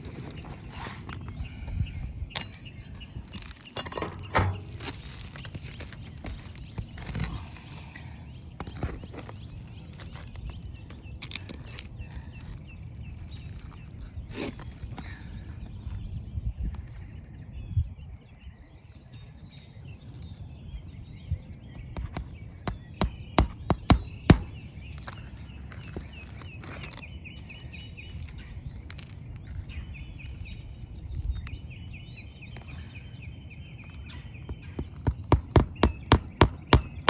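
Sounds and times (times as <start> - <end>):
birds chirping: 0.0 - 37.0
hammer striking roofing nails: 22.7 - 24.6, 35.0 - 37.0.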